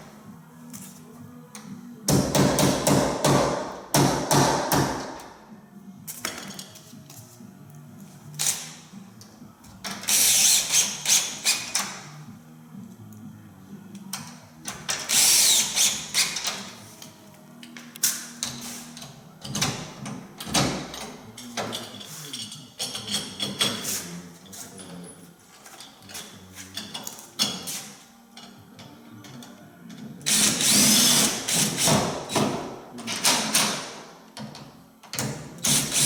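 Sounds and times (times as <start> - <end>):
background music: 0.0 - 23.2.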